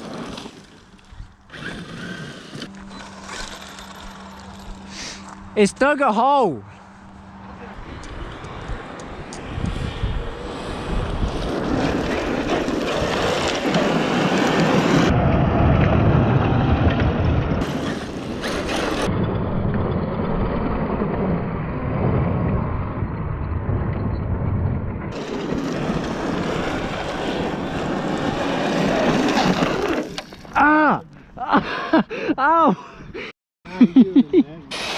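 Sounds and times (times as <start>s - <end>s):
rc trucks driving over dirt: 0.0s - 5.7s, 7.7s - 30.6s, 34.7s - 34.9s
wind noise on microphone: 7.8s - 30.1s.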